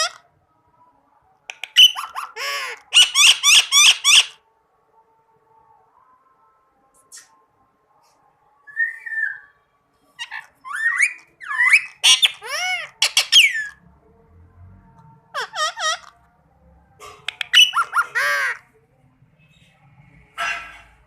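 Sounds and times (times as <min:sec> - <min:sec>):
parakeet squawking: 0:00.0 - 0:00.3, 0:01.5 - 0:04.4, 0:10.2 - 0:13.8, 0:15.3 - 0:16.2, 0:17.1 - 0:18.7.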